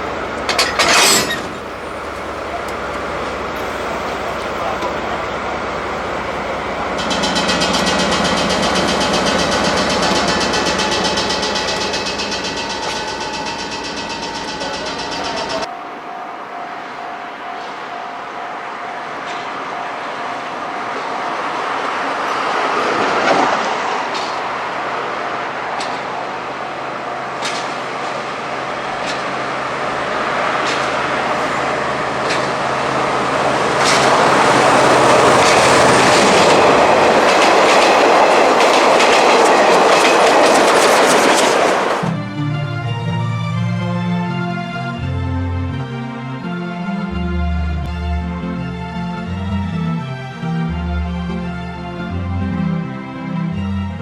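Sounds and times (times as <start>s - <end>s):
train wheels clicking on rail joints: 0.0s - 42.2s.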